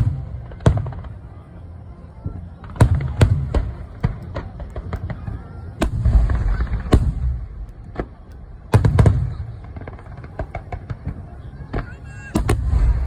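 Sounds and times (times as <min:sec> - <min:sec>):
fireworks bursting with echo: 0:00.0 - 0:13.0
fireworks crackling: 0:00.0 - 0:13.0.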